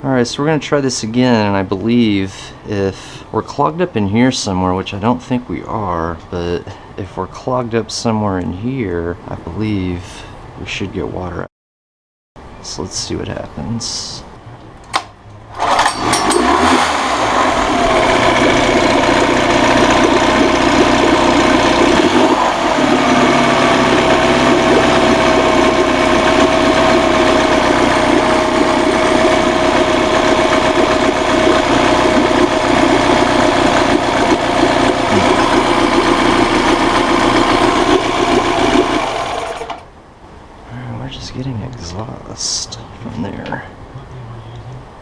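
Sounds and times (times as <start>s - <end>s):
outboard motor running: 15.5s - 39.9s
thin steady whine: 17.3s - 39.8s.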